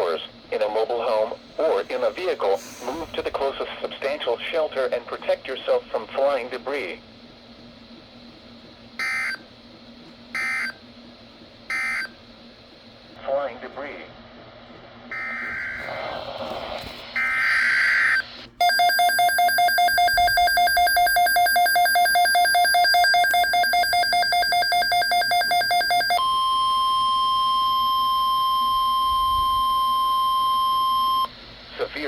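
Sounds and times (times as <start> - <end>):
steady single-pitch warning tone: 9.0 - 9.5, 10.3 - 10.8, 11.7 - 12.2, 15.1 - 16.1, 17.2 - 31.4
screech of digital header data: 15.1 - 16.1.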